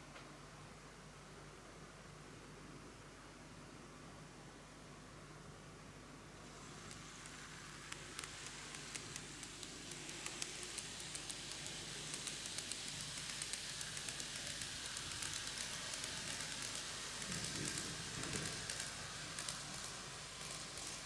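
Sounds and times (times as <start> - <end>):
model train wheels and motor hiss: 6.3 - 21.0
rail joint clicks: 7.9 - 21.0.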